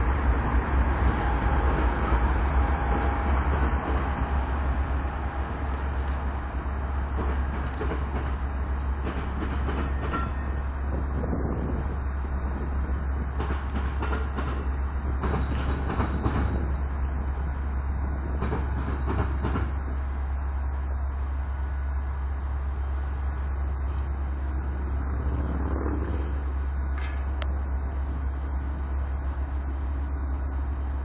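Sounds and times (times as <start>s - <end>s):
train rumbling: 0.0s - 31.0s
wheels clicking over rail joints: 9.0s - 10.6s, 13.3s - 16.8s.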